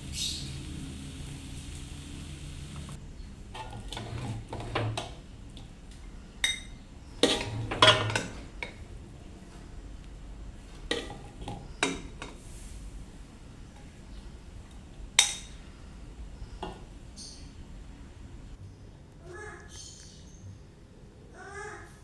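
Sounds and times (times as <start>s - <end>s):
metal utensils clinking on dishes: 6.4s - 8.9s, 10.8s - 12.4s, 14.6s - 15.7s.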